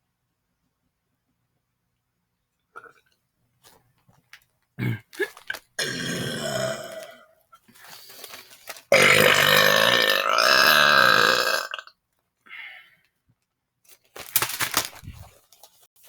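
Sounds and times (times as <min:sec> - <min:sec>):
man burping: 0:04.8 - 0:07.3, 0:09.0 - 0:11.9.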